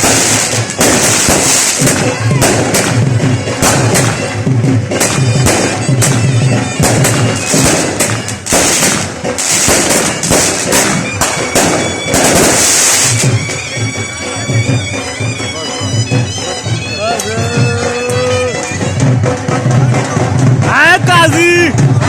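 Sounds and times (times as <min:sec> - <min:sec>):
firework hissing: 0:00.0 - 0:03.0, 0:06.9 - 0:13.4
firecrackers banging: 0:00.0 - 0:17.3
band music with reedy wind: 0:00.0 - 0:22.0.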